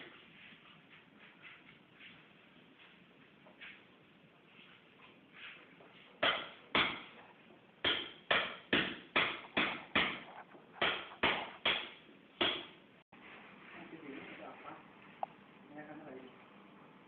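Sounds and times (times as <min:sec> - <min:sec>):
hammer knocks: 0:07.8 - 0:12.8.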